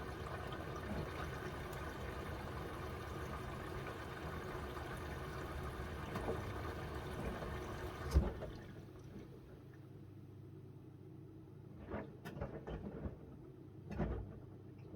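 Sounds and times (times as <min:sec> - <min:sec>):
washing machine water inflow: 0:00.0 - 0:10.0.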